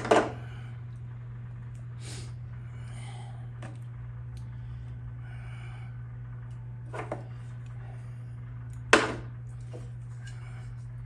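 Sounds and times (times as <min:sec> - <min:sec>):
steady low hum: 0:00.0 - 0:11.0
faint breath: 0:02.0 - 0:03.6, 0:04.4 - 0:06.3.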